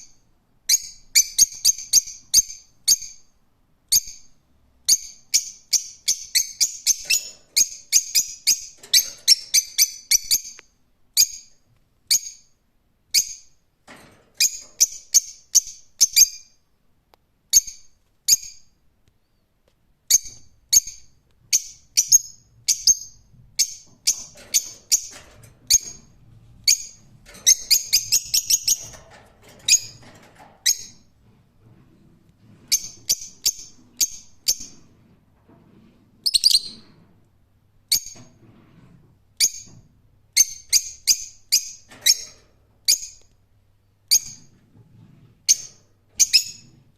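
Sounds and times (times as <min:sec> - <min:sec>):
lovebirds chirping: 0:36.2 - 0:36.8.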